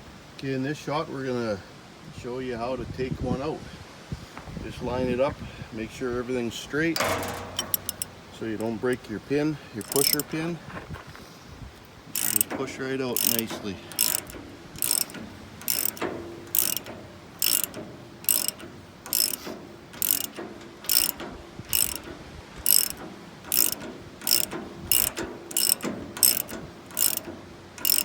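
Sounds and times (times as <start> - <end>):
rivet tool clicking: 7.0 - 9.0, 9.8 - 10.4, 12.1 - 12.6, 13.2 - 28.0.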